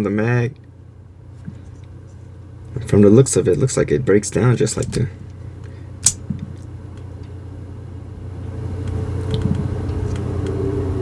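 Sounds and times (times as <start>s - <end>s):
low rumble: 7.6s - 11.0s.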